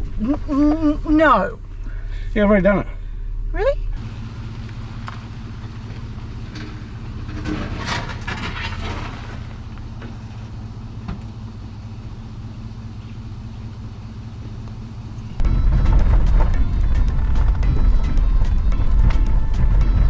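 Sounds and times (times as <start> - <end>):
vehicle engine rumbling: 0.0 - 20.0
loud music: 15.4 - 20.0.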